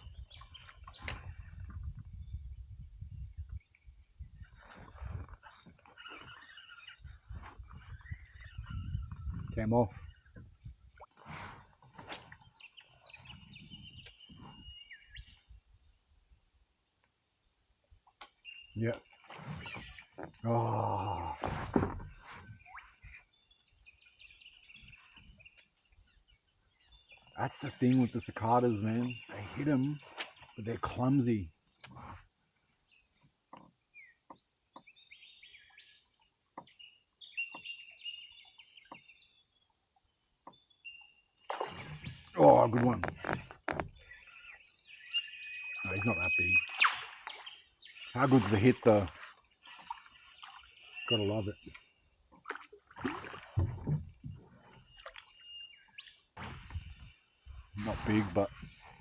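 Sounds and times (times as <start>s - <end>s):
birds chirping and warbling: 0.0s - 16.2s, 18.0s - 59.0s
bird whistling faintly: 44.2s - 47.5s.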